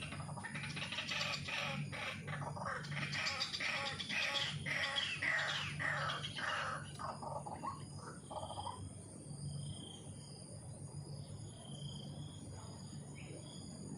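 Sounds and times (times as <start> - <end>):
birds harsh falling calls: 0.0 - 8.8.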